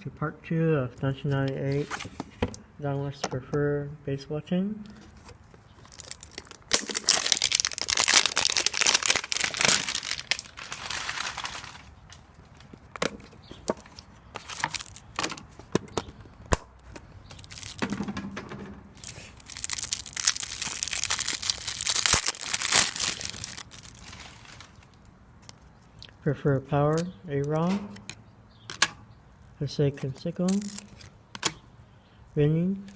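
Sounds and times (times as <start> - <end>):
wrapper crackling: 5.7 - 12.7, 14.4 - 15.2, 17.3 - 17.9, 19.0 - 25.6, 30.5 - 31.1.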